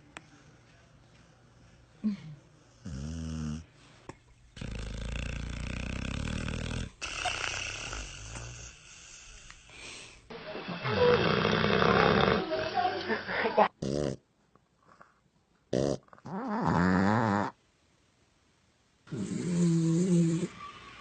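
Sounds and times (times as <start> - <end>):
person snoring: 2.8 - 3.6, 4.6 - 10.2, 10.8 - 12.5, 15.8 - 17.6, 19.1 - 20.6.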